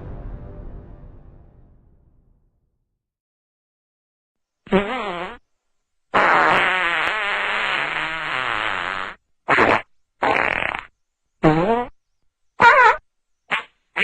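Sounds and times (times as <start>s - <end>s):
fart sounds: 4.7s - 5.4s, 6.1s - 12.0s, 12.6s - 14.0s.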